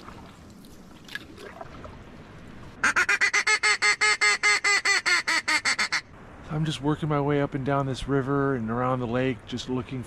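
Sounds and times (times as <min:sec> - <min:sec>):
loud duck quacks: 0:02.8 - 0:06.1.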